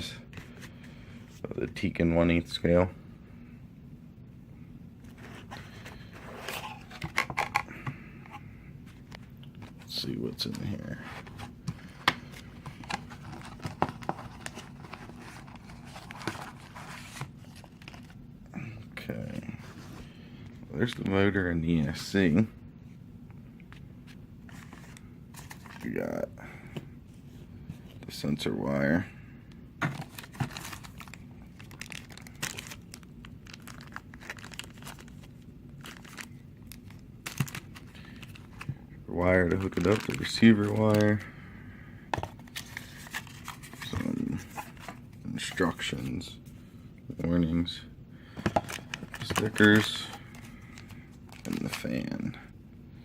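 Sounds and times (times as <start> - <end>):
packaging rustling: 5.0 - 7.7, 8.9 - 18.2, 29.8 - 41.2, 42.2 - 46.2, 48.3 - 52.2.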